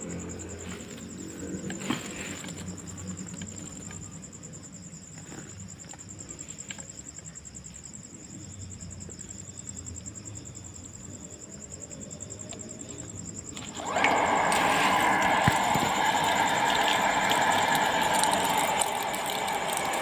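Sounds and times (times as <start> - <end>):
insects trilling: 0.0 - 20.0
faint clicks: 13.5 - 20.0.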